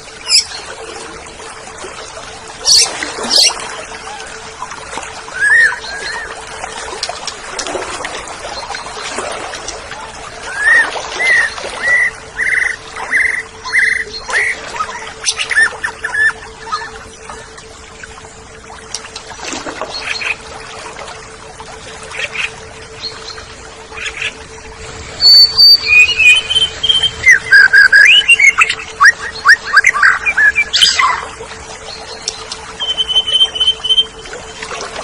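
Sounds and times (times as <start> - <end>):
bird singing whistled notes: 25.2 - 31.1, 32.8 - 34.2.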